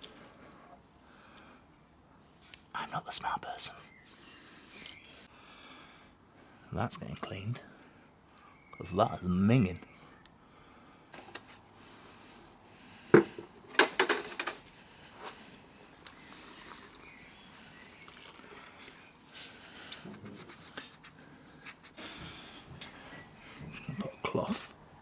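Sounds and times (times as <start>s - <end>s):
small clicks and rustling: 11.1s - 11.6s, 13.3s - 23.9s
metal parts clinking and clattering: 13.8s - 14.6s.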